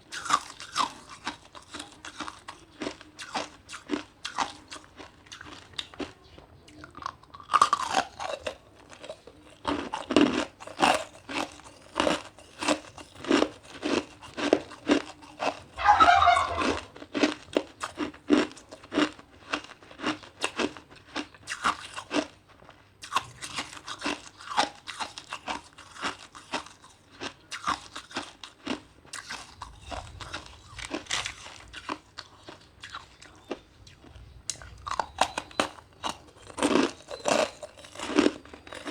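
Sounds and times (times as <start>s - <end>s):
ice being chewed: 0.0s - 38.9s
bird calling: 15.7s - 16.9s.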